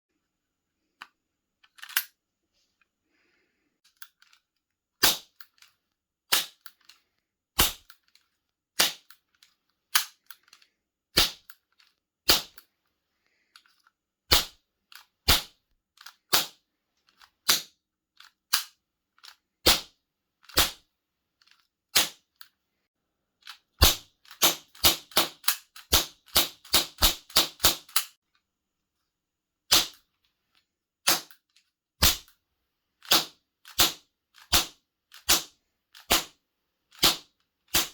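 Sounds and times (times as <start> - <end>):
toy cap gun firing: 5.0 - 5.4, 6.3 - 6.7, 7.6 - 8.0, 8.8 - 9.2, 23.8 - 28.1, 29.7 - 30.0, 32.0 - 32.3, 33.0 - 36.3, 37.0 - 37.9.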